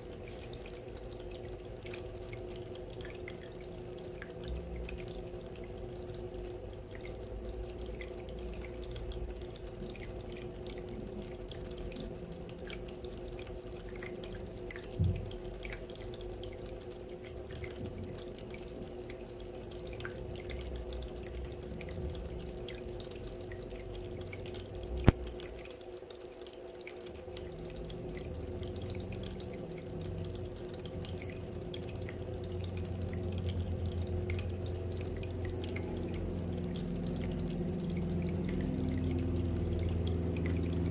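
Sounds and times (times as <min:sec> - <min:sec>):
water fountain trickling: 0:00.0 - 0:40.9
low hum: 0:27.6 - 0:40.9.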